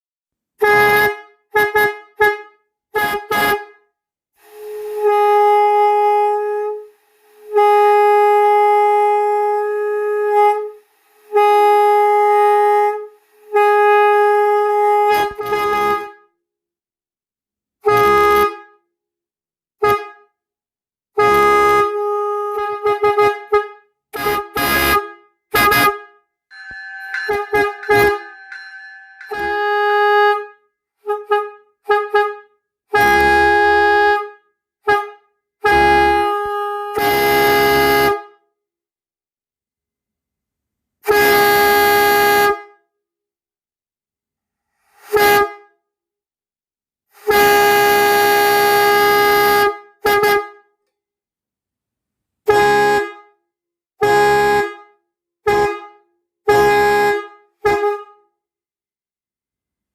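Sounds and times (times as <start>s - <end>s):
faint two-pitch horn tone: 26.5s - 30.2s
truck horn blasts: 26.6s - 30.5s, 33.0s - 34.2s, 34.9s - 38.2s, 56.5s - 58.0s.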